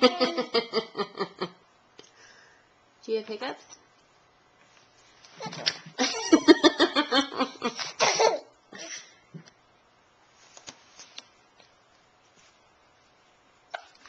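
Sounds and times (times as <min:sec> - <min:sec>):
person laughing: 0:00.0 - 0:01.6.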